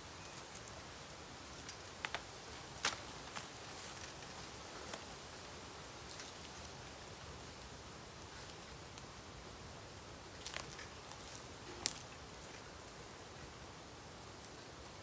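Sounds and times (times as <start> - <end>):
burning bamboo popping: 1.6 - 5.1, 10.3 - 12.5.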